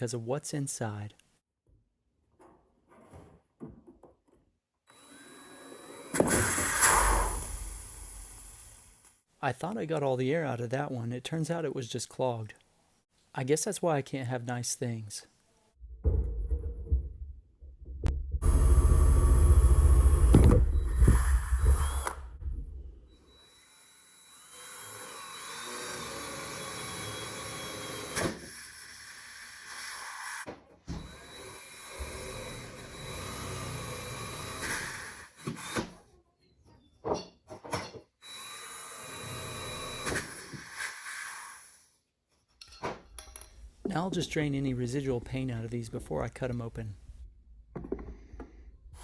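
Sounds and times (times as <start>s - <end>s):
power drill running: 18.4s - 22.3s, 23.3s - 28.5s, 31.1s - 35.9s, 38.2s - 41.7s.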